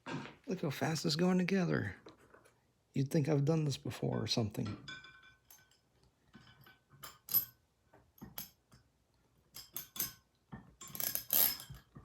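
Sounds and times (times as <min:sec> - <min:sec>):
metal parts clinking: 0:06.5 - 0:07.6, 0:09.6 - 0:10.2, 0:10.8 - 0:12.0.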